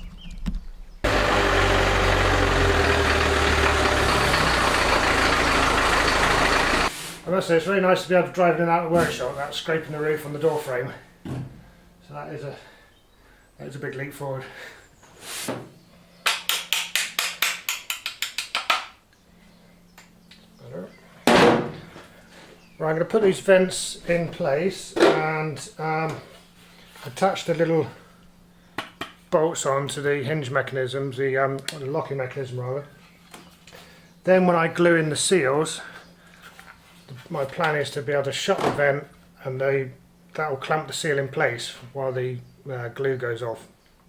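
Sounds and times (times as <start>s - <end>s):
vehicle engine running: 1.0s - 6.9s
loud thump: 21.3s - 21.9s.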